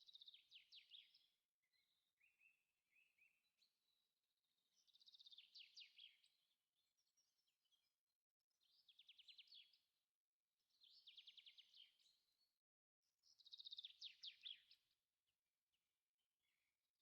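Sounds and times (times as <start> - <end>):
faint songbird trills: 0.0 - 9.9, 10.6 - 12.5, 13.1 - 15.0.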